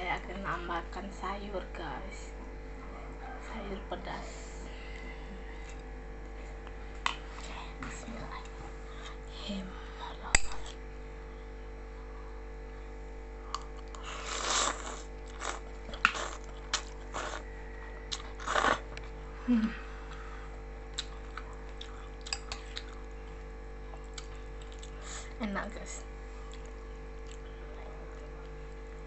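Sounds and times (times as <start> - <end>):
chewing: 13.5 - 19.2, 20.1 - 25.1, 26.4 - 28.8
noodles slurping: 13.6 - 17.5, 18.1 - 19.0.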